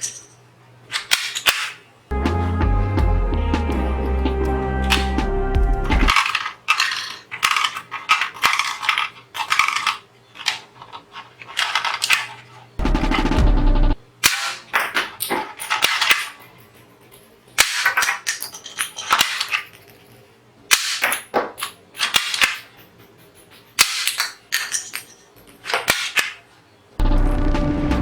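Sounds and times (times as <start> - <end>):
toy gun firing clicking shots: 1.0 - 1.8, 14.2 - 15.0, 15.7 - 16.4, 22.0 - 22.8, 23.8 - 24.5.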